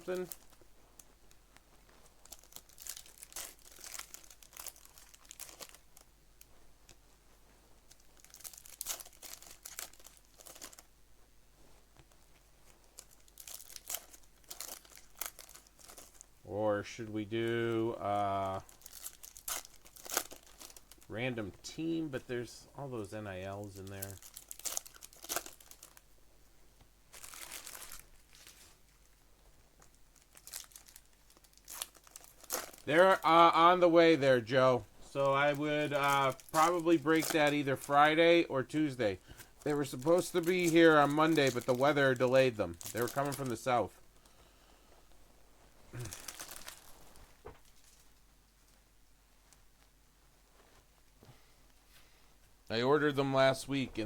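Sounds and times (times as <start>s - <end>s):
plastic wrappers crinkling and tearing: 0.0s - 1.3s, 2.0s - 7.0s, 7.9s - 10.9s, 12.0s - 16.4s, 17.4s - 22.1s, 23.4s - 26.1s, 27.0s - 44.3s, 45.9s - 48.8s.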